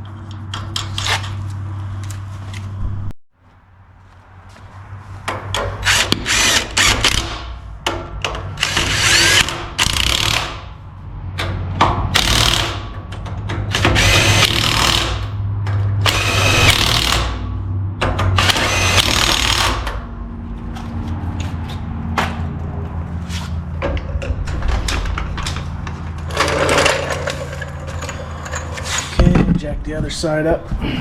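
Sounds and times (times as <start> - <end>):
impact wrench bursts: 5.6 - 7.6, 8.6 - 10.7, 12.1 - 12.9, 13.7 - 15.4, 16.0 - 17.5, 18.4 - 20.0.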